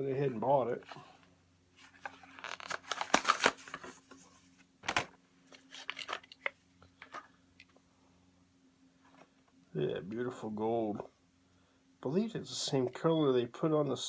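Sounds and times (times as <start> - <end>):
plastic and card packaging crinkling: 1.8 - 7.2.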